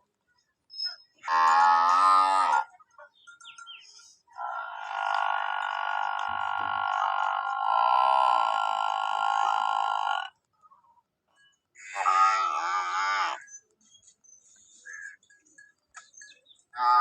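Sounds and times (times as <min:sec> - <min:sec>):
water buffalo bellowing: 0:01.2 - 0:02.7, 0:04.3 - 0:10.4, 0:11.8 - 0:13.5, 0:16.7 - 0:17.0.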